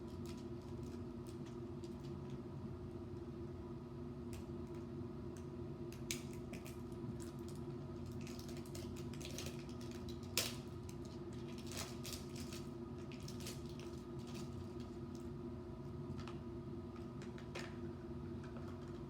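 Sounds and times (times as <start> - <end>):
plastic packaging clicks and rustles: 6.2 - 15.0.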